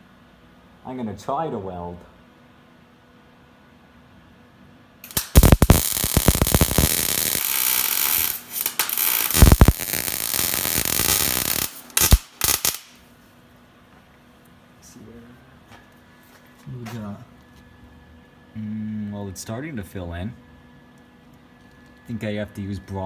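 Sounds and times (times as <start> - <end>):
arc welder crackling hiss: 5.0 - 13.2.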